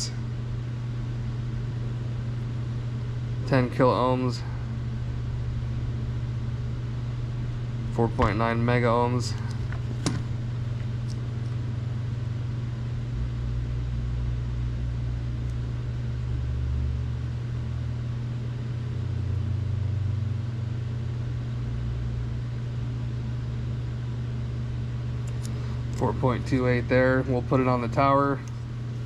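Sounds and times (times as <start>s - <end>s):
machine droning: 0.0s - 29.0s.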